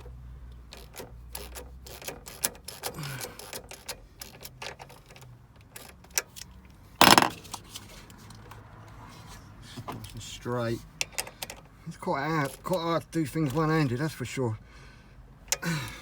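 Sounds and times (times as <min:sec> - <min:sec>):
short rattling clatter: 0:07.0 - 0:07.6.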